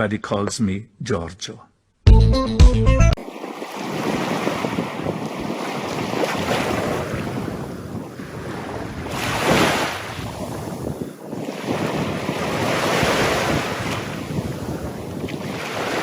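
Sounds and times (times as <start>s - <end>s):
rushing water: 3.2s - 7.5s, 11.5s - 16.0s
wind buffeting microphone: 3.6s - 16.0s.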